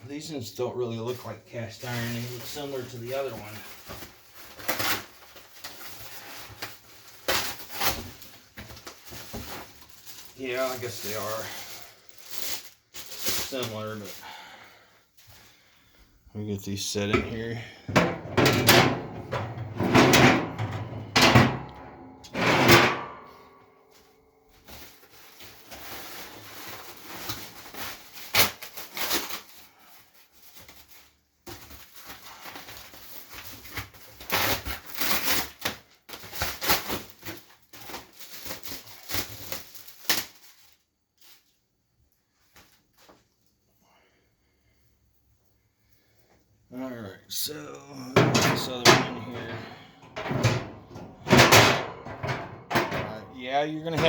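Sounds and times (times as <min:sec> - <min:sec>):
metal grates clanking: 0:17.1 - 0:23.4, 0:48.2 - 0:54.0
metal scraping and sliding: 0:17.9 - 0:23.3, 0:48.2 - 0:54.0.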